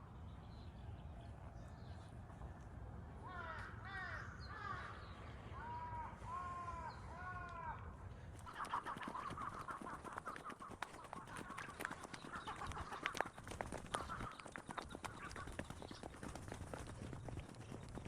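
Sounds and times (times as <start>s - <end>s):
crows cawing: 3.2s - 5.0s, 5.6s - 7.8s, 13.9s - 14.5s
rapid clicks and chatter: 8.4s - 18.0s.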